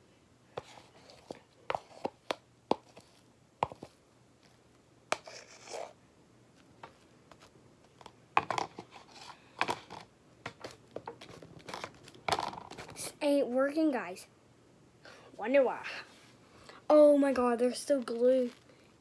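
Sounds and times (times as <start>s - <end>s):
spoon scraping bowl: 0.6s - 3.9s, 5.1s - 6.0s.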